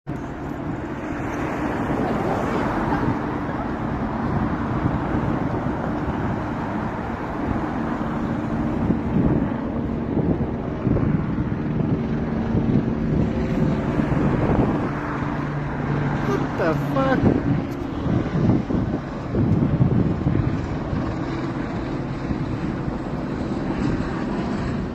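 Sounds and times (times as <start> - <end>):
helicopter flying overhead: 0.1 - 24.9.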